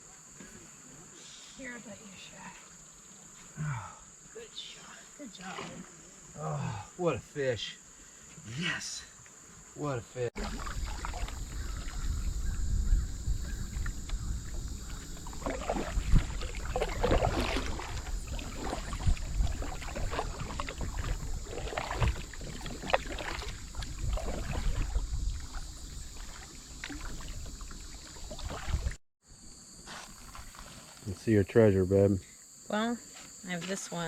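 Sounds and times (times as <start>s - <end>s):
kayak paddle splashing: 2.6s - 6.3s, 10.4s - 29.0s, 30.0s - 31.1s.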